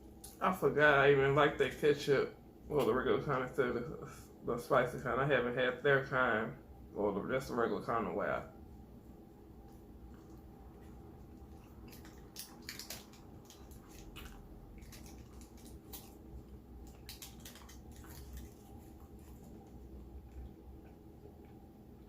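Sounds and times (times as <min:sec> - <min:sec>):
person chewing food: 0:09.1 - 0:22.0.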